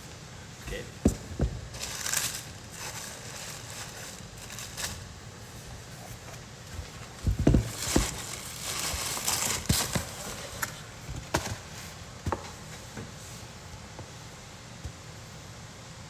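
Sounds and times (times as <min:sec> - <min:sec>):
knocks and bumps on shoe box: 0:00.7 - 0:02.0, 0:06.7 - 0:10.3
paper crinkling: 0:01.7 - 0:10.8.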